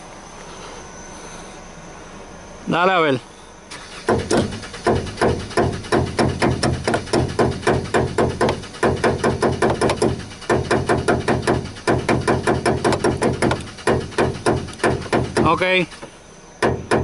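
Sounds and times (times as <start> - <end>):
engine cranking: 3.7 - 16.1
ratchet knocking on fuel tank: 4.1 - 15.6, 16.6 - 17.0.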